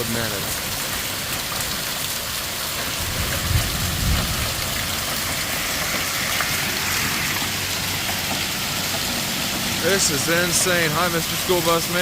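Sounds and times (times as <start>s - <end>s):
heavy rain pouring: 0.0s - 12.0s
wind gusting on microphone: 2.9s - 8.9s.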